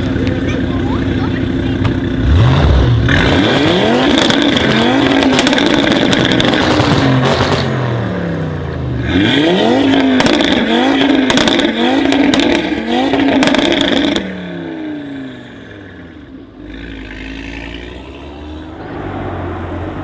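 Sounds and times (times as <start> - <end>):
exhaust crackles and pops: 0.0 - 7.8, 9.9 - 14.2
car engine revving: 0.0 - 20.0.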